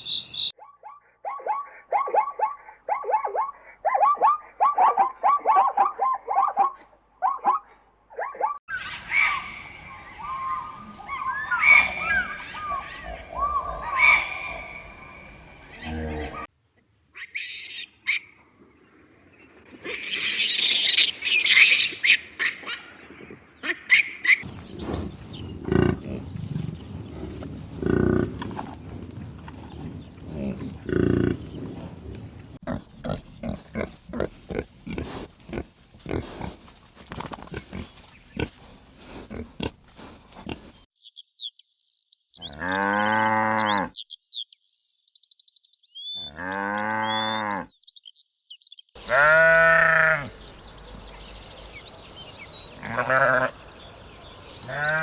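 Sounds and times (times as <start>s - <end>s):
birds chirping: 0.0s - 0.6s, 22.8s - 42.7s, 43.4s - 55.0s
farm animal calls: 0.0s - 14.9s, 32.6s - 40.9s, 42.4s - 44.0s, 46.0s - 47.7s, 49.0s - 50.5s, 52.6s - 55.0s.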